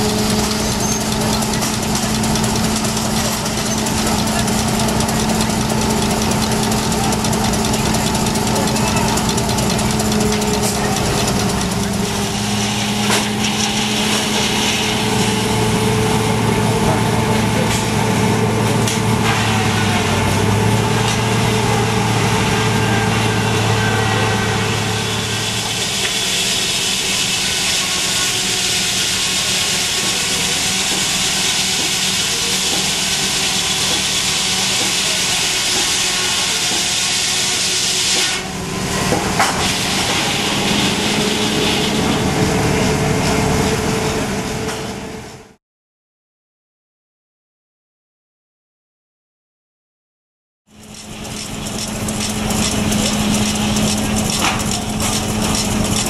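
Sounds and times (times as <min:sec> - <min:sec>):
steam engine humming: 0:00.0 - 0:45.3, 0:50.8 - 0:56.0
loud steam hiss: 0:24.6 - 0:38.5, 0:39.5 - 0:42.2.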